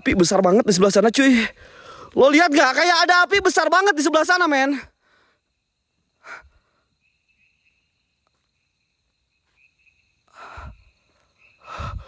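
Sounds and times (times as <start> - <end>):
breath close to microphone: 1.4 - 2.2, 5.0 - 5.4, 10.3 - 10.9, 11.6 - 12.0.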